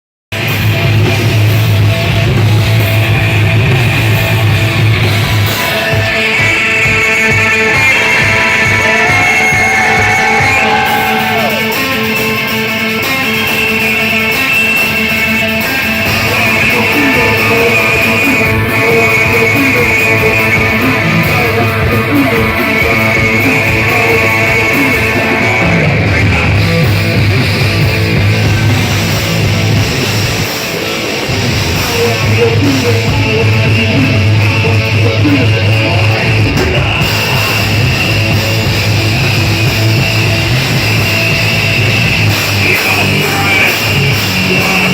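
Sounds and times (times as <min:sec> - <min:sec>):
bass guitar: 0:00.3 - 0:44.9
distorted electric guitar: 0:00.3 - 0:44.9
drums: 0:00.3 - 0:44.9
rock band playing live: 0:00.3 - 0:44.9.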